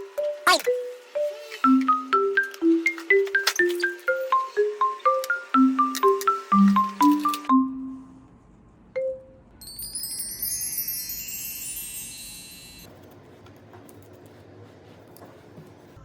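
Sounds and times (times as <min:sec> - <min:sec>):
high wind-chime tones: 0:09.6 - 0:12.9.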